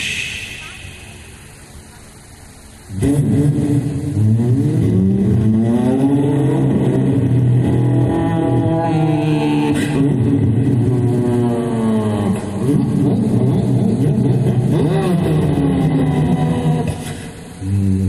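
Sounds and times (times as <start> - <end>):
man imitating car engine: 7.6 - 17.0.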